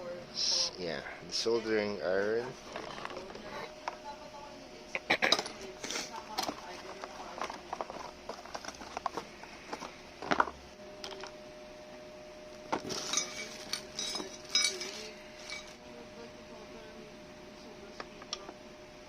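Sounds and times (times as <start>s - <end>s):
metal parts clinking: 12.8s - 15.8s.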